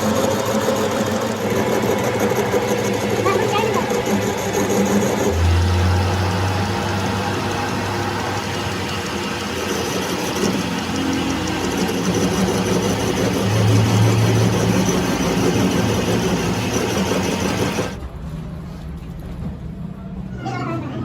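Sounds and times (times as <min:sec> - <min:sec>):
engine humming: 0:00.0 - 0:21.0.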